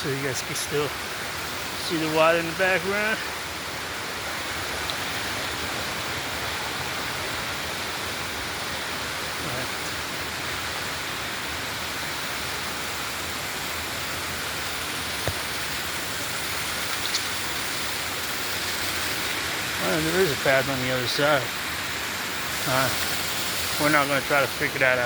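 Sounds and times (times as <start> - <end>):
waterfall roaring: 0.0 - 25.0
faint clicks: 4.8 - 5.1, 16.9 - 17.4.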